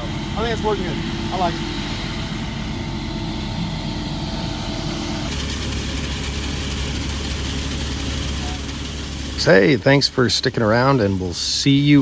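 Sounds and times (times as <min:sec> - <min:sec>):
truck engine running: 0:00.0 - 0:12.0.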